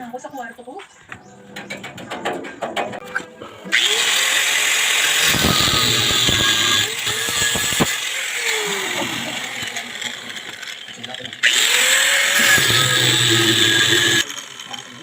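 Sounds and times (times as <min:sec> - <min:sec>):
power tool hissing: 0:03.6 - 0:15.0.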